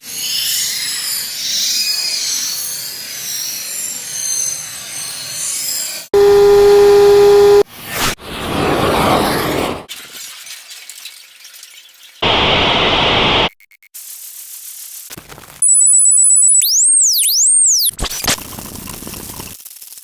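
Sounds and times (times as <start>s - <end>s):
loud buzzer-like tone: 6.2s - 7.7s
rushing noise: 12.2s - 13.5s.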